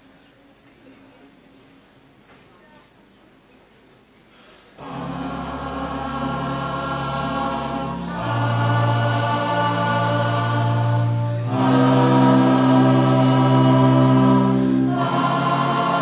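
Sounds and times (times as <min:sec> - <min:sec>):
choir singing held chords: 0:04.8 - 0:16.0.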